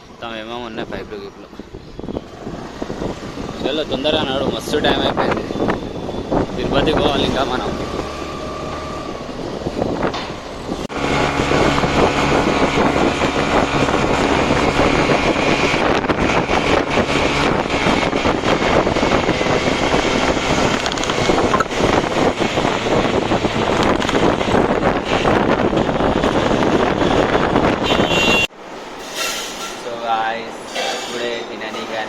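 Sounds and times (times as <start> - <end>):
wind noise on microphone: 0.0 - 29.8
motorcycle engine running: 10.9 - 28.3.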